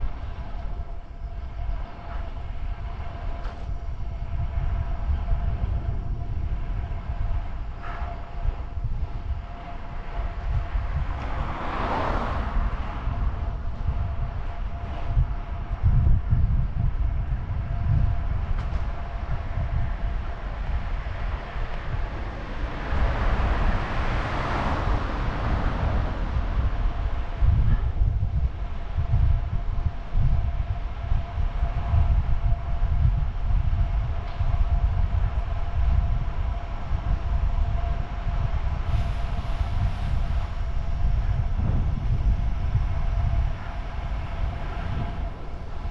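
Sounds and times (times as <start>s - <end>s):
faint steady whine: 0.0s - 11.5s, 12.5s - 45.9s
wind buffeting microphone: 0.0s - 45.9s
vehicle passing: 10.0s - 15.4s, 21.1s - 27.6s.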